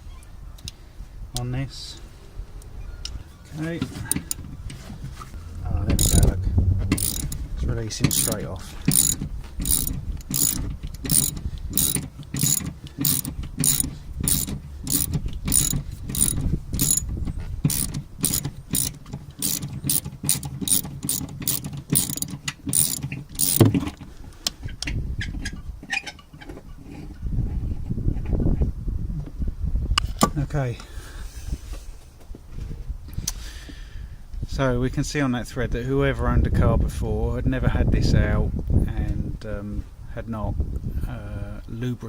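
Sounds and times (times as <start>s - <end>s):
socket ratchet clicking: 4.1s - 4.4s, 5.9s - 6.3s, 6.9s - 7.4s, 8.1s - 17.1s, 17.7s - 23.7s.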